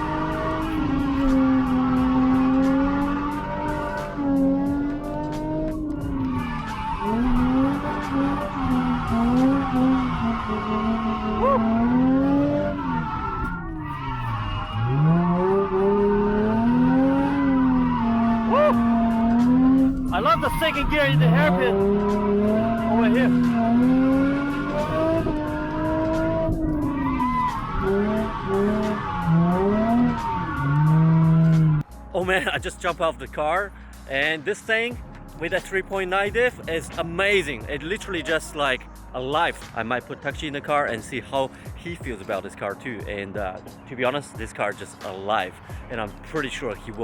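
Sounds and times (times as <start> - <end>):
tyres squealing and skidding: 0.0 - 31.9
car engine revving: 0.0 - 32.5.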